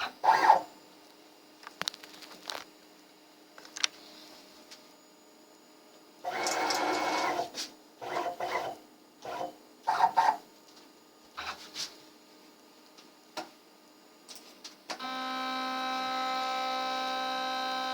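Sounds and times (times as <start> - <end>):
cnc router motors whining: 15.0 - 17.9.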